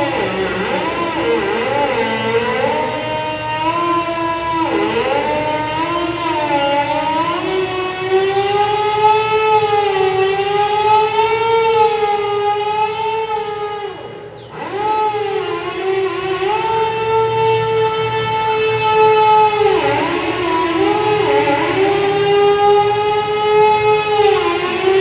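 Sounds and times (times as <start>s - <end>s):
siren-style danger alarm: 0.0s - 25.0s.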